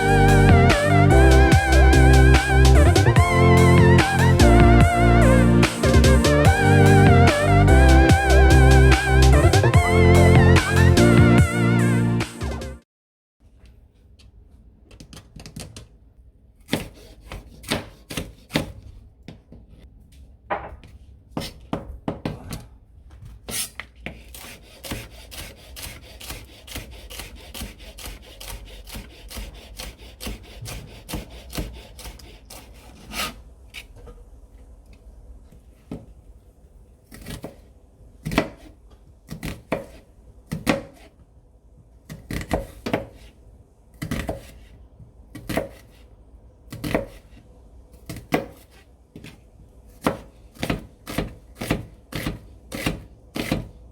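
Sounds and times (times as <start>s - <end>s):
knife chopping on cutting board: 16.7s - 18.8s, 23.5s - 33.3s, 37.1s - 37.6s, 38.2s - 38.7s, 39.3s - 41.1s, 42.1s - 43.3s, 44.0s - 44.6s, 45.4s - 46.0s, 46.7s - 47.2s, 48.1s - 49.4s, 50.0s - 53.7s.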